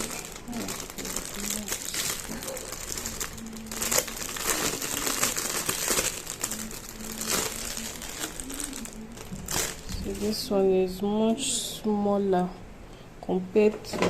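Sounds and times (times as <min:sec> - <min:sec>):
packaging crinkling and rustling: 0:00.0 - 0:10.6.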